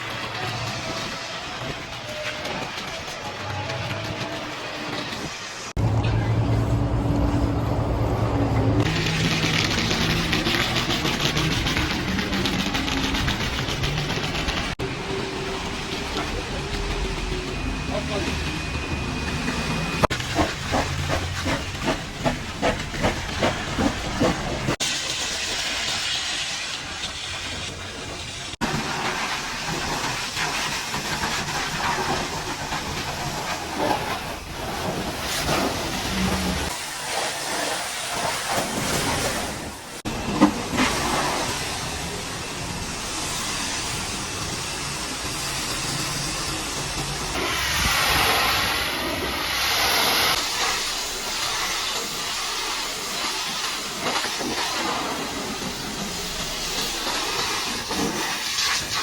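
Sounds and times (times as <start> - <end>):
pressure washer spraying water: 8.8 - 18.2, 18.9 - 59.0
pressure washer spray hissing: 40.8 - 59.0.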